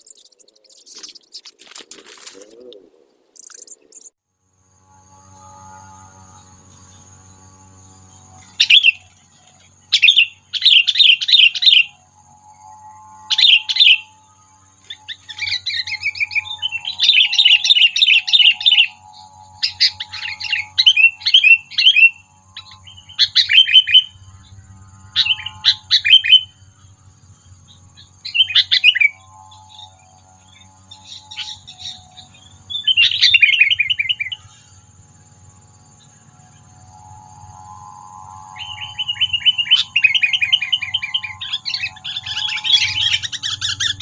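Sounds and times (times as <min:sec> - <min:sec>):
bird chattering whistled calls: 0:00.0 - 0:01.5, 0:38.6 - 0:44.0
faint high whine: 0:00.0 - 0:44.0.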